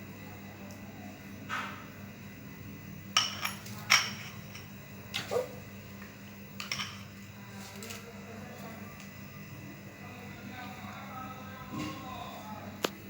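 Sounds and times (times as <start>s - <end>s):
faint steady hum: 0.0s - 13.0s
utensils clinking against dishes: 3.2s - 5.5s, 6.6s - 8.0s.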